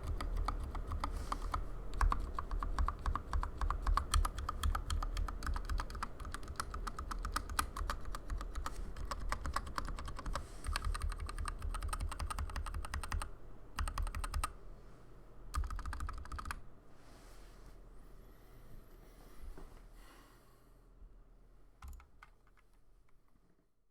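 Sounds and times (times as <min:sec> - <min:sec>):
fast typing on mechanical keyboard: 0:00.0 - 0:14.5, 0:15.5 - 0:16.6.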